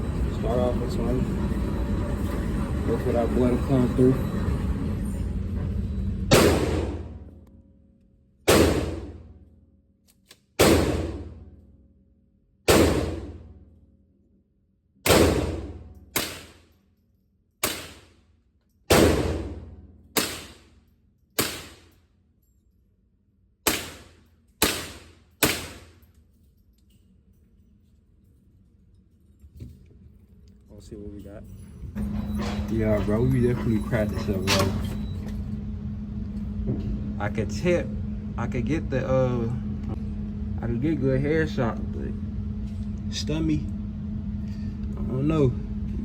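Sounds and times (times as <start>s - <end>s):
gunshots ringing out: 6.3s - 7.1s, 8.5s - 9.2s, 10.6s - 11.3s, 12.7s - 13.4s, 15.1s - 16.6s, 17.6s - 18.0s, 18.9s - 19.6s, 20.2s - 20.6s, 21.4s - 21.8s, 23.7s - 25.9s.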